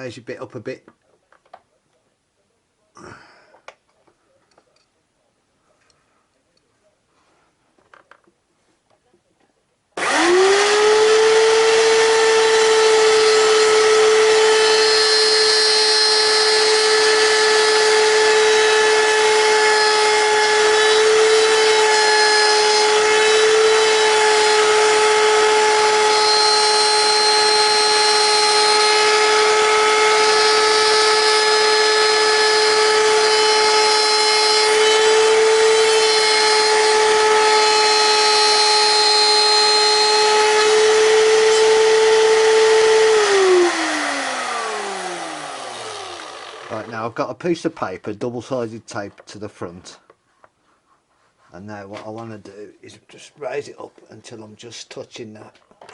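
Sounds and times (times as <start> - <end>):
router spinning with high whine: 10.0 - 47.1.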